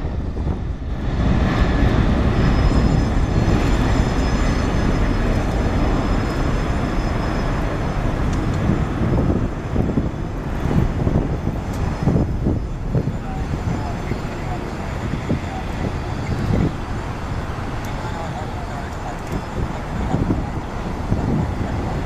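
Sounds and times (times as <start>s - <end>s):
faint high whine: 0.0s - 10.4s
deep jet engine rumble: 0.0s - 22.0s.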